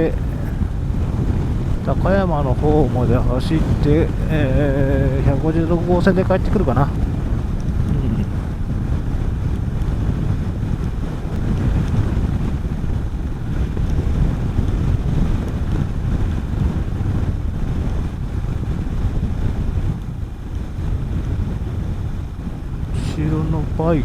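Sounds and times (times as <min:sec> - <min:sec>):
motorcycle engine running: 0:00.0 - 0:24.0
wind buffeting microphone: 0:00.0 - 0:24.0.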